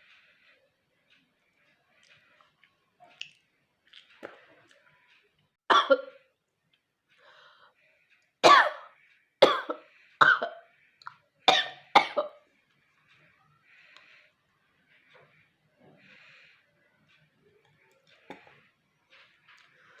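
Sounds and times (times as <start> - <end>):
woman coughing: 5.7 - 6.2, 11.5 - 12.4.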